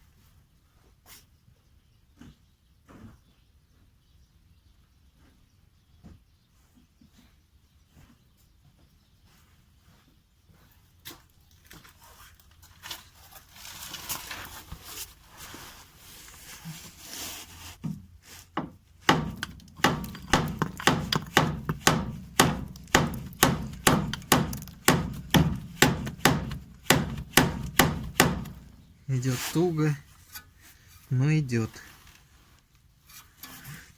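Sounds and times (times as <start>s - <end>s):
hammer blows on metal: 19.1s - 29.9s
tools clanking and scraping: 33.1s - 33.9s.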